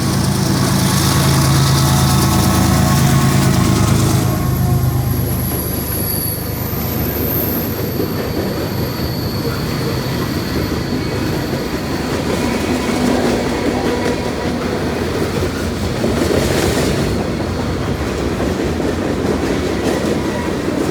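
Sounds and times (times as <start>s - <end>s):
high-pitched wheel squeal: 0.0s - 14.5s
train wheels rumbling on rails: 0.0s - 20.9s.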